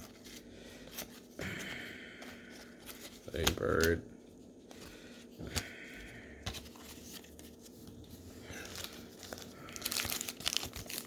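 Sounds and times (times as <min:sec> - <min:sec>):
wrapper tearing and crinkling: 0:08.5 - 0:11.0.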